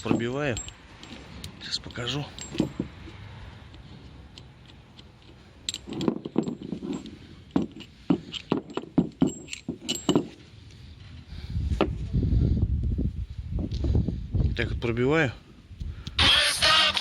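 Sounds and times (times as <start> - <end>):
sharp metal knocks and clinks: 0.0 - 3.3, 4.4 - 10.5.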